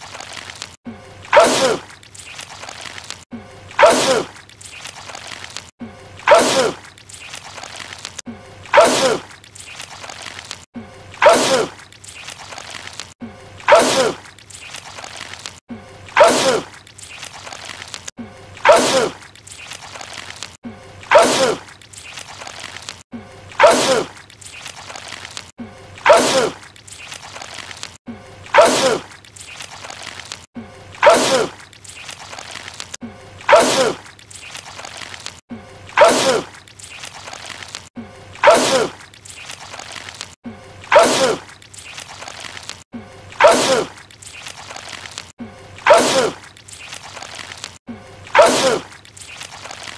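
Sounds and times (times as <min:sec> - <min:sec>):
man sneezing: 0:45.9 - 0:46.4, 0:48.4 - 0:48.9.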